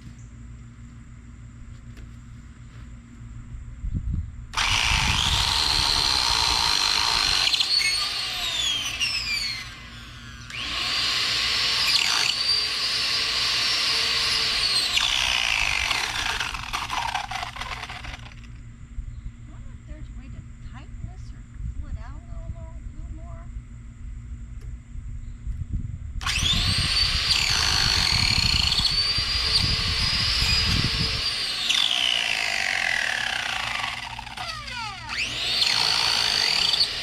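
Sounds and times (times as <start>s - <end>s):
high motor whine: 4.4s - 21.3s, 26.2s - 37.0s
chainsaw running: 4.6s - 18.6s, 26.2s - 37.0s.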